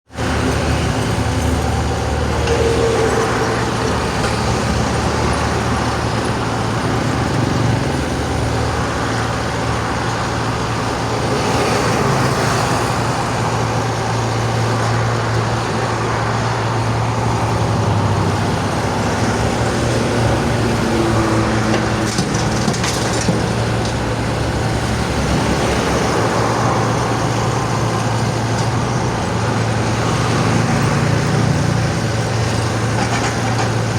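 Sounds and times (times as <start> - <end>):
excavator diesel engine running: 0.1 - 33.9.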